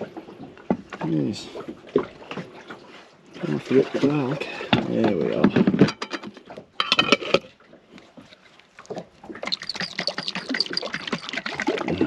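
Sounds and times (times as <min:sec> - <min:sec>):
liquid sloshing in a jar: 0:05.8 - 0:12.0.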